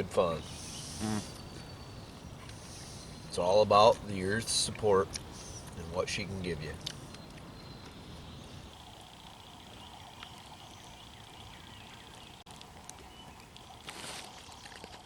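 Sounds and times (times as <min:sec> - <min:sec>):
background hiss: 0:00.0 - 0:12.0
rustling: 0:13.8 - 0:15.0.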